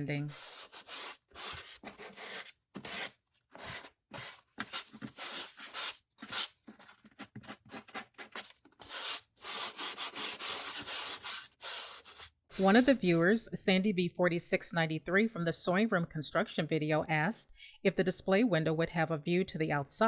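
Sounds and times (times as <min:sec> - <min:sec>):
hand sanding strokes: 0:00.0 - 0:13.4.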